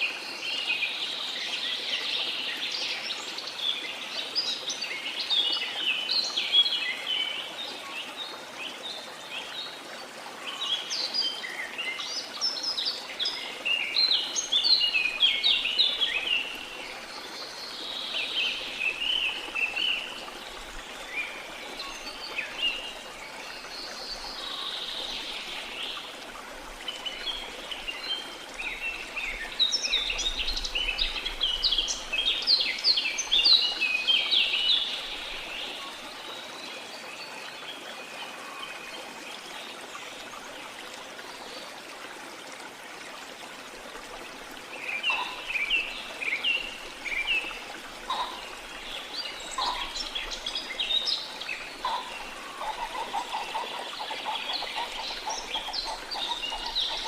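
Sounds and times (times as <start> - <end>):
flowing stream rushing: 0.0 - 57.0
birds chirping: 44.8 - 57.0.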